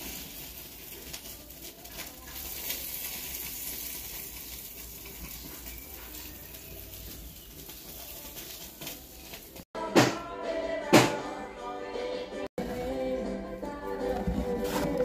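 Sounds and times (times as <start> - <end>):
food sizzling in a frying pan: 0.0 - 9.7.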